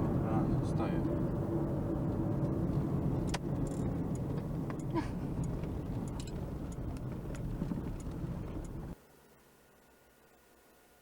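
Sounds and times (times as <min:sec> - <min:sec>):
car engine and road rumble: 0:00.0 - 0:10.8
faint clicks and ticks: 0:03.2 - 0:09.0.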